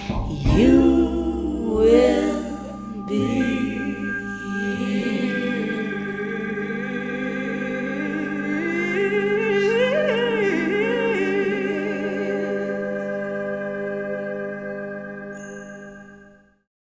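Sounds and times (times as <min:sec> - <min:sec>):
sustained pop chord: 0:00.0 - 0:09.7
wordless voice with vibrato: 0:00.0 - 0:15.3.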